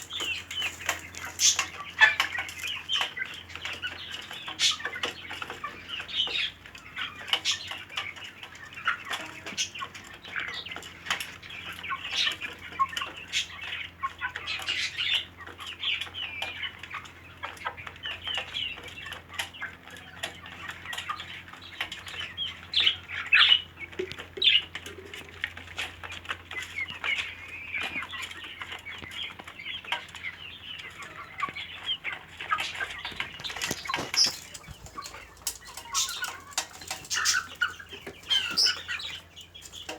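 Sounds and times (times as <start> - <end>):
wings fluttering: 0.0 - 2.3, 32.6 - 39.9
flock of birds chirping: 0.0 - 39.9.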